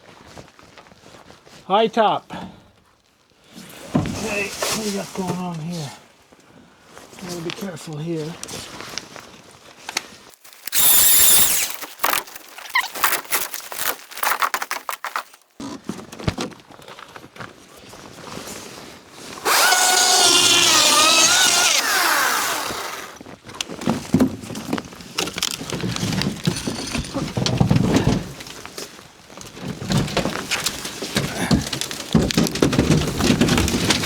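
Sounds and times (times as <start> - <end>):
power drill running: 10.5 - 11.8, 19.4 - 23.2
knocks and clatter: 23.9 - 28.5, 29.6 - 34.0.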